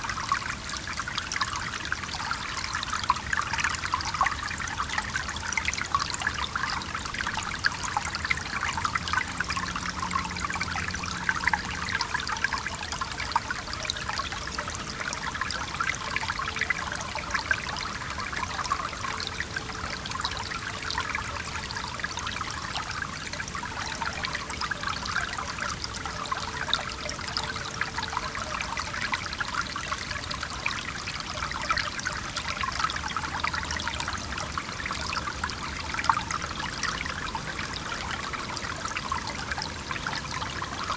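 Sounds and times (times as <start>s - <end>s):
stream babbling over rocks: 0.0s - 40.9s
distant traffic hum: 6.8s - 15.6s.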